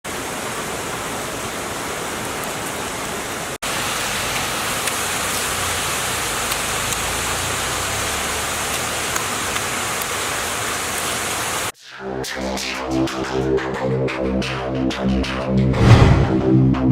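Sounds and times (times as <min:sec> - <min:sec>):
rushing water: 0:00.1 - 0:11.8
music: 0:11.8 - 0:16.9.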